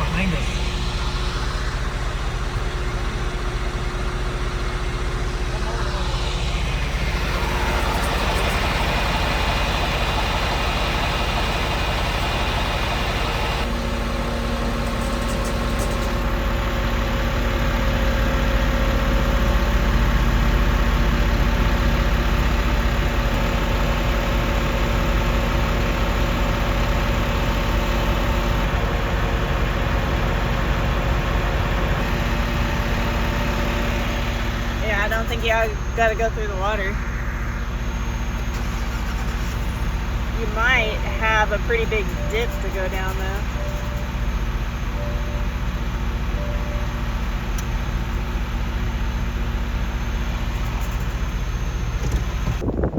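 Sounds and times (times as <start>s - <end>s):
falling whine: 0.0s - 20.5s
steady low hum: 0.0s - 23.6s, 27.4s - 52.9s
engine idling: 0.0s - 52.9s.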